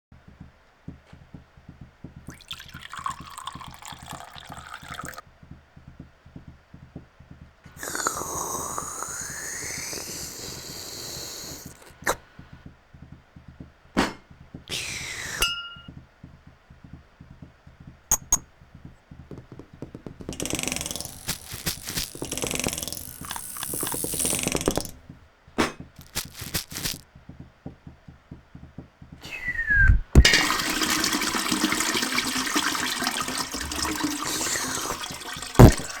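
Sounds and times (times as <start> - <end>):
knocks and clicks: 15.7 - 30.5
rushing water-like noise: 30.2 - 36.0.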